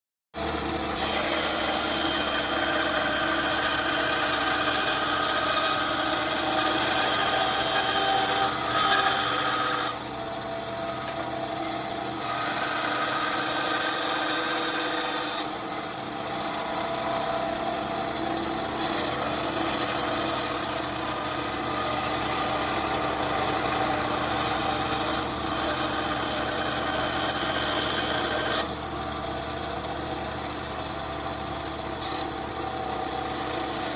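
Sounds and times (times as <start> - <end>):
bandsaw motor hum: 0.4 - 33.9
saw blade cutting wood: 0.4 - 33.9.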